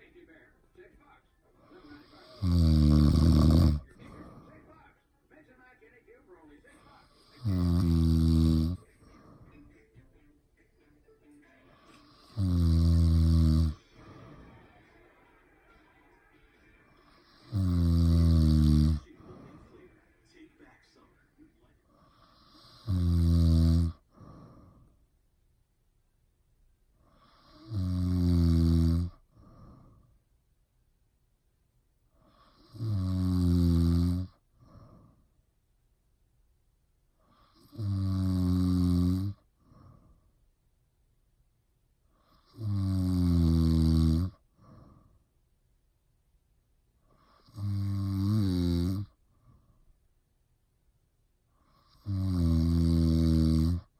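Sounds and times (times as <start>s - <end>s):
deep rattling snores: 2.4s - 3.9s, 7.4s - 8.8s, 12.2s - 13.8s, 17.4s - 19.1s, 22.1s - 24.0s, 27.2s - 29.2s, 32.3s - 34.4s, 37.3s - 39.4s, 42.2s - 44.4s, 47.2s - 49.2s, 51.7s - 53.9s
soft breath: 8.8s - 9.9s, 11.5s - 12.4s, 13.8s - 15.0s, 19.0s - 20.0s, 24.0s - 25.2s, 29.2s - 30.3s, 34.5s - 35.5s, 39.4s - 40.6s, 44.4s - 45.4s, 49.1s - 50.1s
faint breath out: 8.9s - 9.8s, 13.8s - 14.8s, 19.1s - 20.0s, 24.0s - 25.1s, 29.3s - 30.2s.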